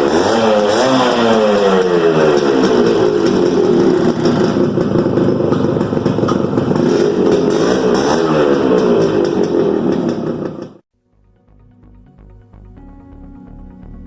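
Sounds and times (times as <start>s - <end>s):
motorcycle engine revving: 0.0s - 10.8s.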